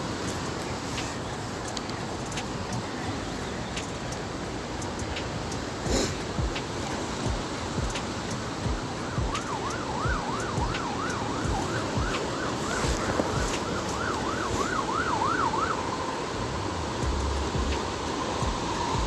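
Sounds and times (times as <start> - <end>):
siren-like warbling tone: 9.1 - 17.8
low rumbling background: 16.4 - 19.0.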